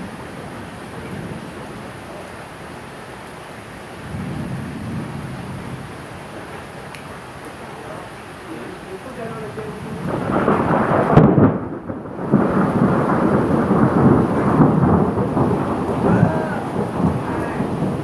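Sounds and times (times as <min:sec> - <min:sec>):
rain hissing: 0:00.0 - 0:18.0
thunder rumbling and cracking: 0:04.0 - 0:06.7, 0:09.3 - 0:18.0.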